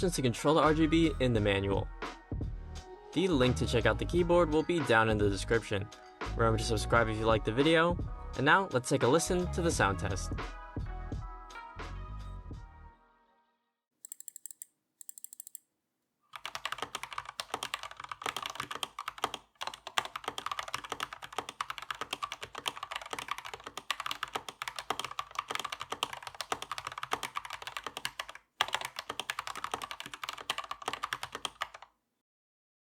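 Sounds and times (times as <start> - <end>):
mechanical keyboard typing: 14.1 - 15.6, 16.3 - 31.9.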